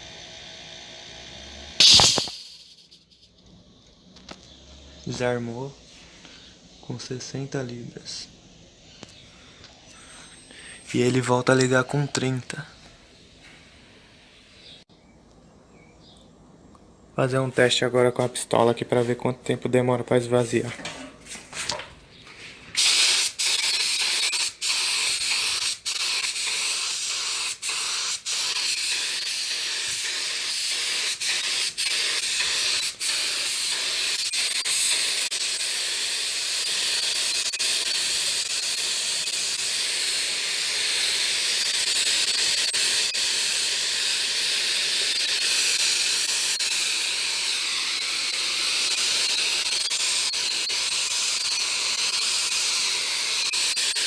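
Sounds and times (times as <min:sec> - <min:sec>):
compressed air hissing: 0:00.0 - 0:03.2, 0:22.7 - 0:54.0.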